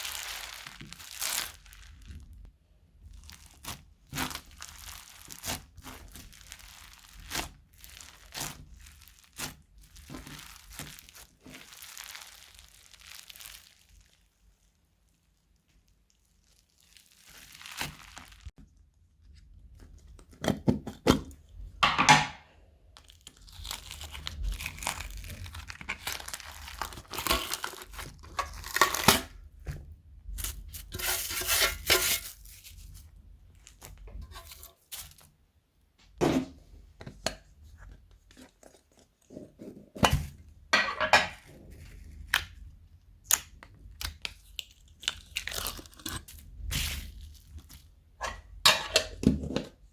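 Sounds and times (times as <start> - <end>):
crunchy slime crinkling and crunching: 0.0 - 18.6, 22.6 - 35.4, 41.3 - 48.7.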